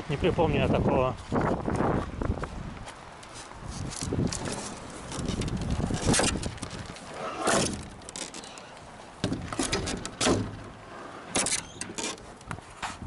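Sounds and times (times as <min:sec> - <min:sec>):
sharp knocks: 0:09.2 - 0:10.7.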